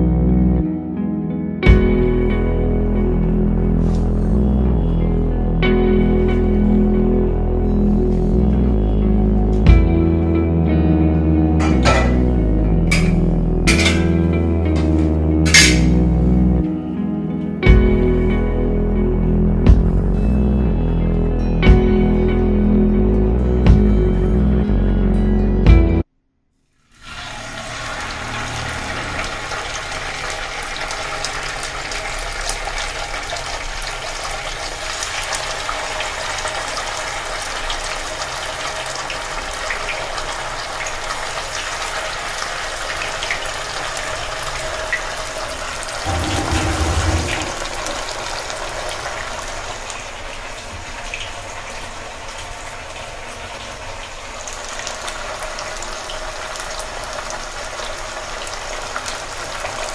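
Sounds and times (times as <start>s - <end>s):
fish deep frying in oil: 26.7s - 59.9s
low rumble: 46.0s - 48.2s.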